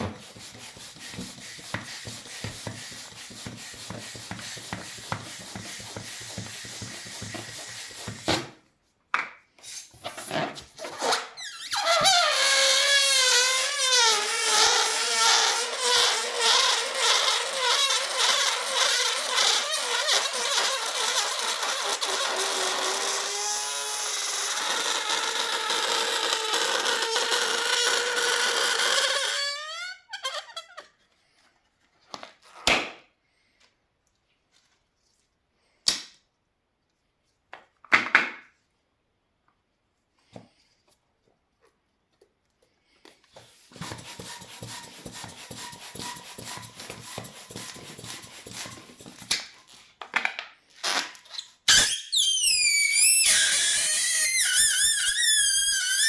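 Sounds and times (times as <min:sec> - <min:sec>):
balloon air squealing out: 0:00.0 - 0:08.6, 0:09.6 - 0:31.0, 0:50.7 - 0:56.0.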